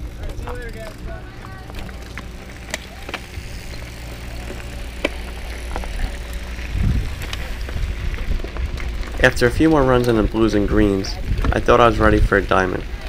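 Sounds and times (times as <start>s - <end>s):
bike clicks and rattles: 0.0s - 13.0s
bike tyres rumbling on dirt: 0.0s - 13.0s
wind on microphone: 5.7s - 13.0s.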